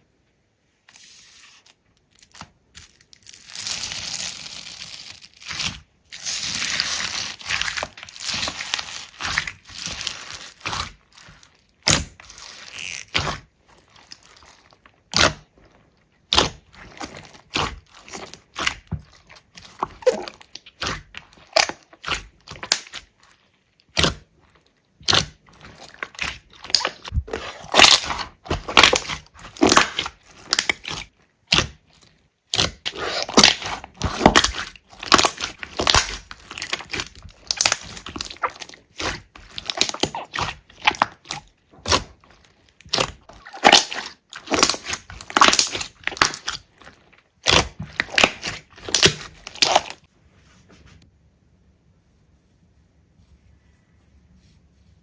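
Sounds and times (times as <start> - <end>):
slime crunching and popping: 2.2 - 50.1.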